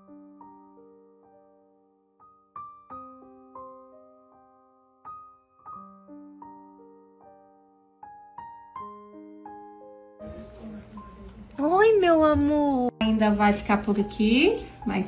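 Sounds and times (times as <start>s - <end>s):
soft piano music: 0.0s - 15.0s.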